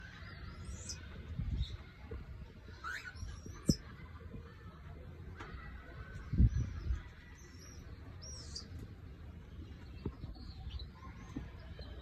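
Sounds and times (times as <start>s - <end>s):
cockatiels chirping: 2.7s - 3.8s.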